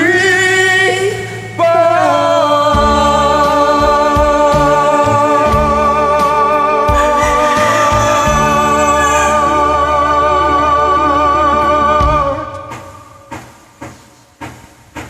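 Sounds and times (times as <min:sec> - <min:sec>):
bass notes: 0:01.7 - 0:12.6
long held sung note: 0:06.7 - 0:12.0.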